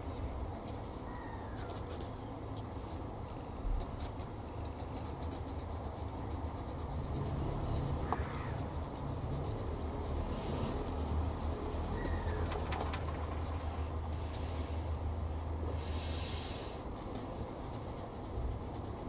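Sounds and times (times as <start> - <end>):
low steady hum: 0.0 - 19.0
hand sanding plastic: 3.8 - 19.0.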